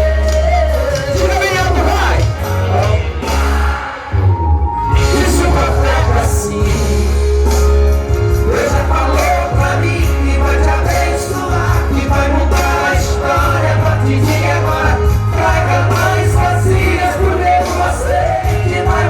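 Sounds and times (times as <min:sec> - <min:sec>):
person singing: 0:00.0 - 0:07.7
loud music with heavy bass: 0:00.0 - 0:19.0.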